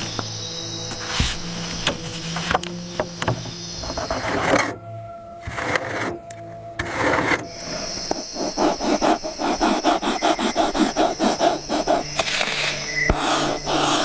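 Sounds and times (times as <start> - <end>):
hand tool rubbing on wood: 6.9 - 14.0.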